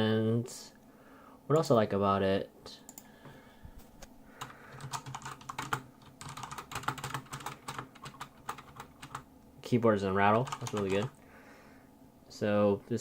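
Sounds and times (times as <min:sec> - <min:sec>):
mechanical keyboard typing: 0:04.4 - 0:09.2, 0:10.3 - 0:11.1.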